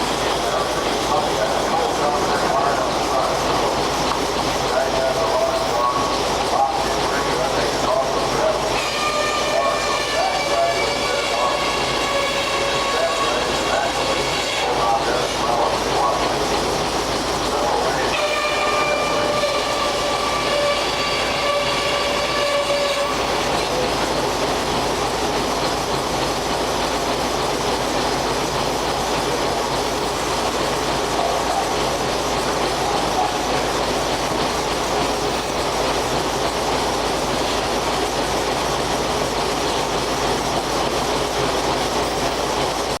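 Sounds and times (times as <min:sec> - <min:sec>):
circular saw cutting lumber: 0:17.5 - 0:24.0.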